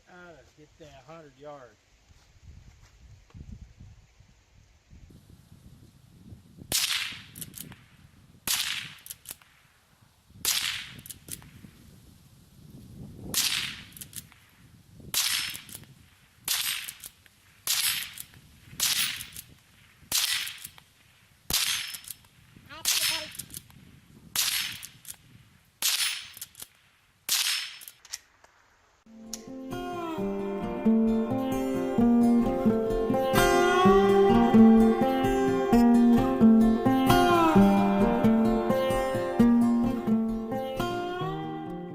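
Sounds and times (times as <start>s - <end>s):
rifle shots cracking: 6.7s - 7.8s, 8.5s - 9.7s, 10.4s - 11.5s, 13.3s - 14.5s, 15.1s - 22.2s, 22.8s - 23.6s, 24.4s - 25.2s, 25.8s - 28.4s.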